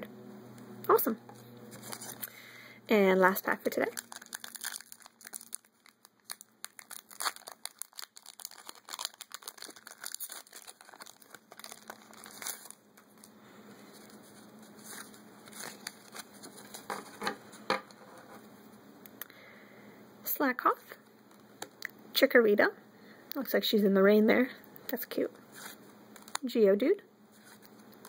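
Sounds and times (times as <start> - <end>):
foil wrapper crinkling: 1.7 - 2.4, 3.4 - 17.3, 25.6 - 26.4.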